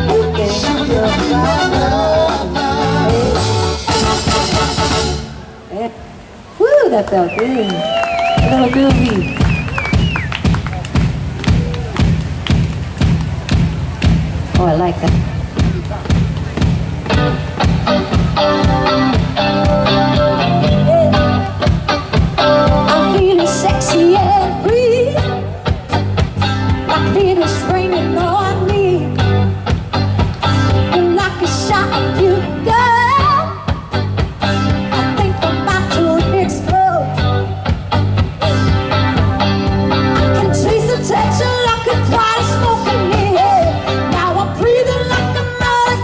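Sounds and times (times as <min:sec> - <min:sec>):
wavering vocal melody: 0:00.0 - 0:03.9
drum kit beat: 0:00.0 - 0:05.3, 0:08.3 - 0:24.6, 0:25.2 - 0:44.5
live band upbeat groove: 0:00.0 - 0:05.3, 0:08.2 - 0:46.0
bass guitar: 0:00.0 - 0:05.5, 0:08.4 - 0:46.0.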